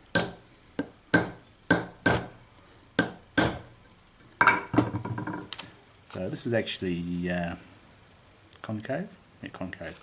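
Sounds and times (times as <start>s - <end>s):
hammer tapping metal punch: 0.1s - 2.4s, 3.0s - 3.8s.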